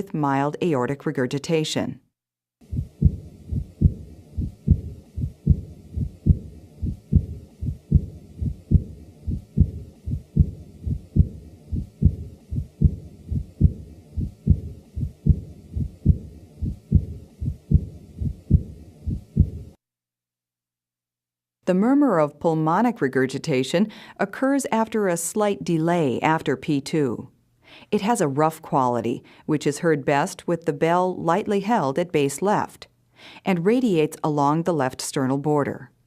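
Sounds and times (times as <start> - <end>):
heartbeat through stethoscope: 2.6 - 19.8
soft blowing heart murmur: 2.6 - 19.8.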